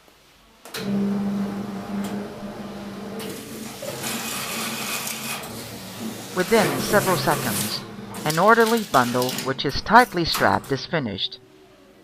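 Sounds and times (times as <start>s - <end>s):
machine motor hum: 0.7s - 10.8s
machine clicks: 8.2s - 10.8s.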